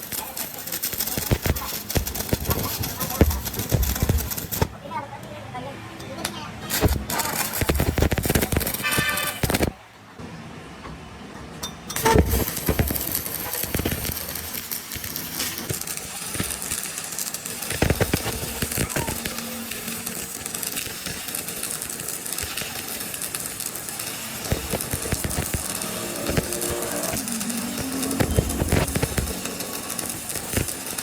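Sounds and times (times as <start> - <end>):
steady hiss: 12.0 - 31.0
knocks and clicks: 24.4 - 30.8.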